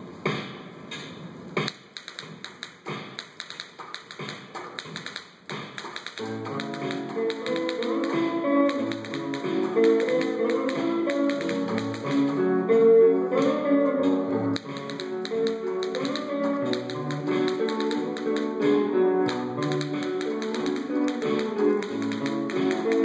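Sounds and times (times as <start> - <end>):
rapid sharp clicking taps: 1.6 - 12.3, 14.6 - 23.0
bouncy melodic music: 6.2 - 23.0.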